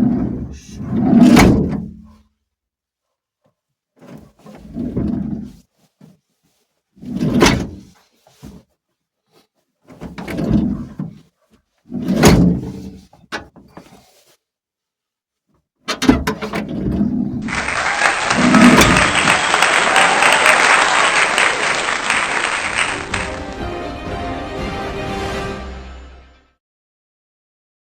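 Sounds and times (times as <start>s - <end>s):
applause: 17.4s - 26.1s
continuous sound: 17.4s - 26.3s
music: 22.1s - 26.6s.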